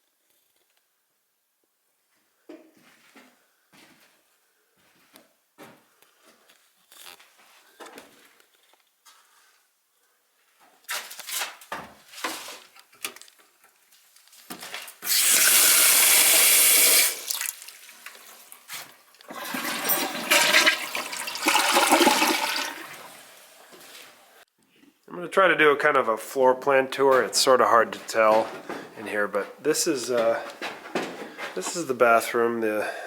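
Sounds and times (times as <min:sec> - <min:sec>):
toilet flushing water rush: 0:15.0 - 0:18.2, 0:19.3 - 0:23.6
gurgling toilet refilling: 0:15.1 - 0:18.5, 0:19.3 - 0:23.5.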